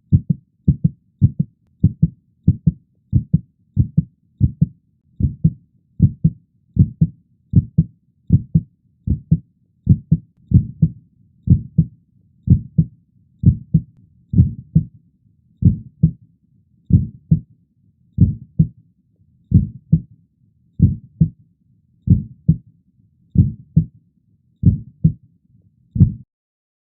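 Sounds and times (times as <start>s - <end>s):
heartbeat thumps: 0.1s - 10.9s, 11.5s - 11.9s, 12.5s - 14.9s, 15.6s - 16.2s, 16.9s - 17.4s, 18.2s - 18.7s, 19.5s - 20.0s, 20.8s - 21.3s, 22.1s - 22.6s, 23.4s - 23.9s, 24.6s - 25.2s, 26.0s - 26.2s.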